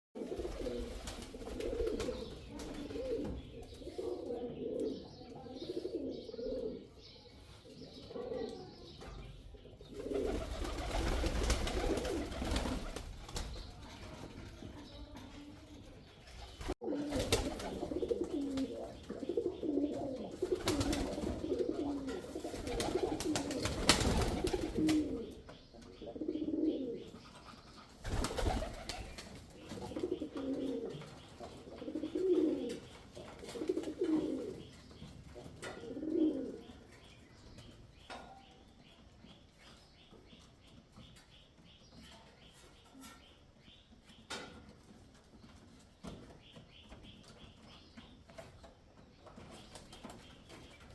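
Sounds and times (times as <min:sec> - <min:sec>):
pigeon cooing: 0:00.2 - 0:07.0, 0:08.0 - 0:08.8, 0:16.8 - 0:25.4, 0:26.0 - 0:29.1, 0:29.8 - 0:34.7, 0:35.6 - 0:36.8.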